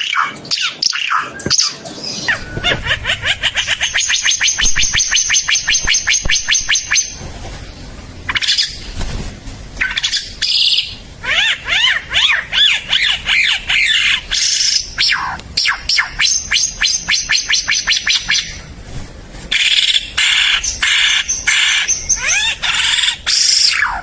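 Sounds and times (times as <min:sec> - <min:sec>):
bird singing trills: 0:00.0 - 0:07.2.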